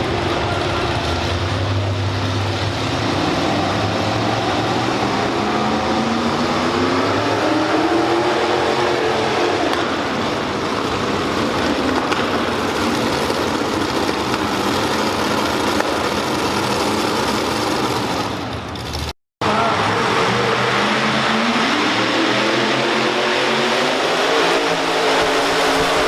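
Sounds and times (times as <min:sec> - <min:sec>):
tractor engine at full throttle: 0:00.0 - 0:26.0.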